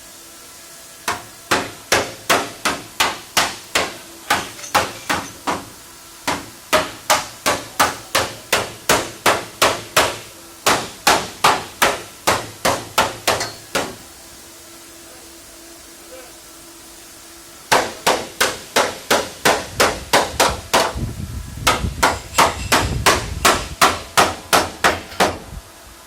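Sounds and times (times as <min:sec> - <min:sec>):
hammer striking: 0:01.1 - 0:14.0, 0:17.7 - 0:21.0, 0:21.6 - 0:25.4.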